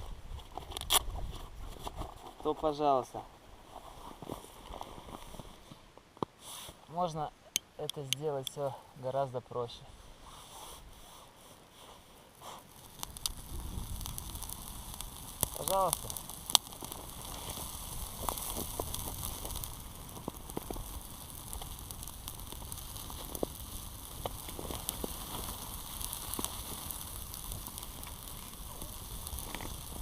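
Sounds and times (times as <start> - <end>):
campfire crackling and hissing: 0.0 - 30.0.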